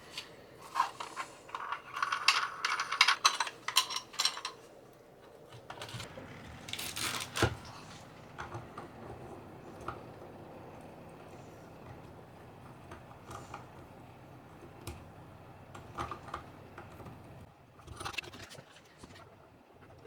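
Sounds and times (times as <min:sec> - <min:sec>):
small parts and tools clinking: 0:00.1 - 0:07.7.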